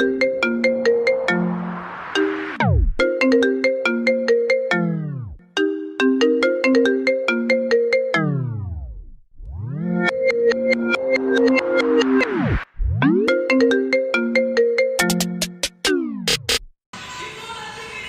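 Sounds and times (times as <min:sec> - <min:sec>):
electronic dance music: 0:00.0 - 0:04.0, 0:09.5 - 0:13.3.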